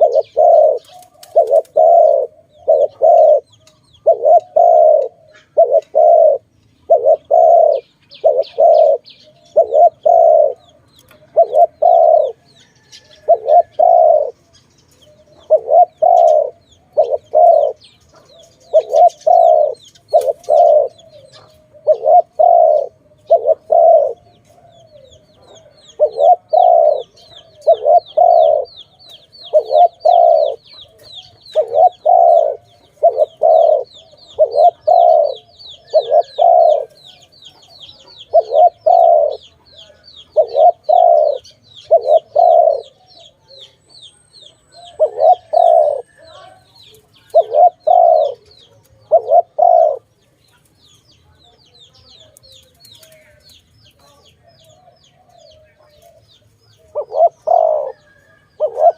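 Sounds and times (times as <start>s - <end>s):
dove cooing: 0.0s - 50.6s, 52.2s - 58.9s
small bird chirping: 0.0s - 58.9s.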